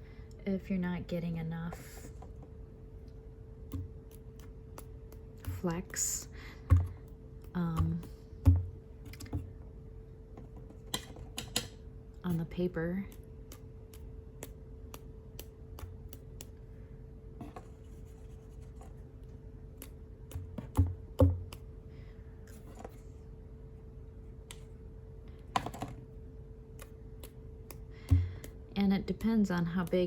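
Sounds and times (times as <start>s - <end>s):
faint hum: 0.0s - 30.0s.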